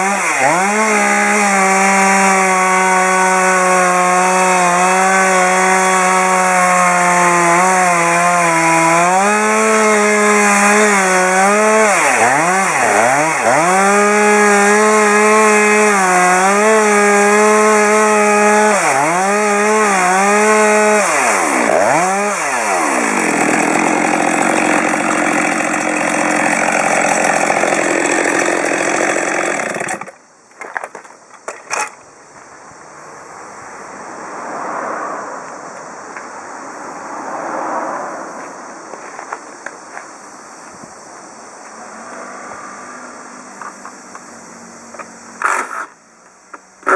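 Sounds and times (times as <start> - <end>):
chainsaw cutting wood: 0.0 - 32.0, 45.4 - 46.0
faint rushing noise: 32.1 - 45.4.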